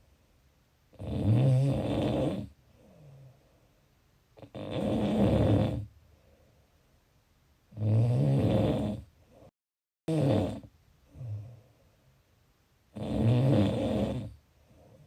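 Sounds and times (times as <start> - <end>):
person snoring: 0.9 - 3.3, 4.4 - 5.9, 7.7 - 9.1, 10.1 - 11.6, 12.9 - 15.0.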